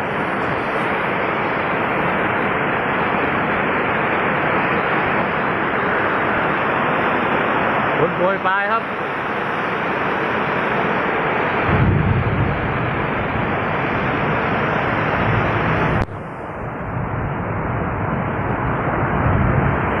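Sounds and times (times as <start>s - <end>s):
heavy rain pouring: 0.0s - 20.0s
low rumble: 11.5s - 20.0s.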